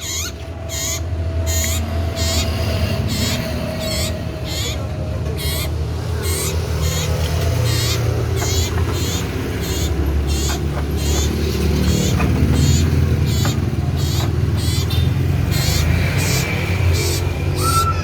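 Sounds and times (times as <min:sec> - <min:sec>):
bird singing high wavering notes: 0:05.4 - 0:18.0.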